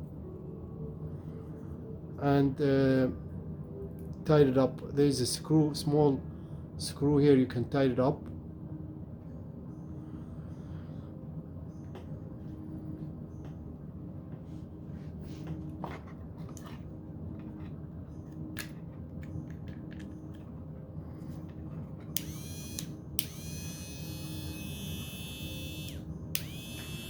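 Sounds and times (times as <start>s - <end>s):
low hum: 8.3s - 27.0s
rotary tool motor whine: 22.2s - 27.0s.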